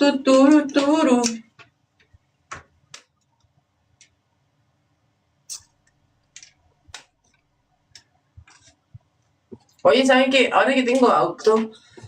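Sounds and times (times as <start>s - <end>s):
clicks and taps of small objects: 0.5s - 4.2s, 5.8s - 9.8s.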